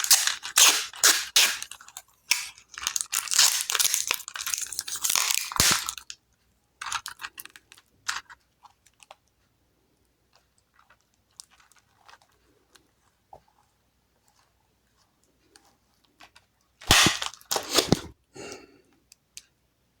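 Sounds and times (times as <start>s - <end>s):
plastic parts crackling and clicking: 0.0s - 6.2s, 6.8s - 9.3s, 15.6s - 18.1s.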